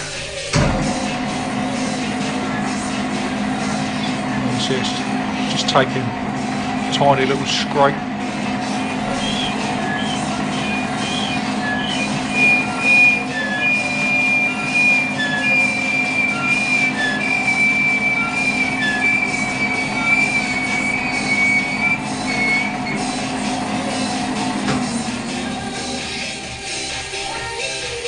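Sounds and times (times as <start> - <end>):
lathe motor hum: 0.0 - 28.0
threading tool squealing on metal: 9.1 - 23.2.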